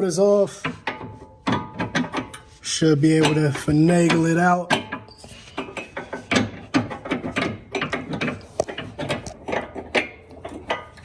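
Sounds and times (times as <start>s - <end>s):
small metal knocks: 0.6s - 2.5s, 3.1s - 11.0s.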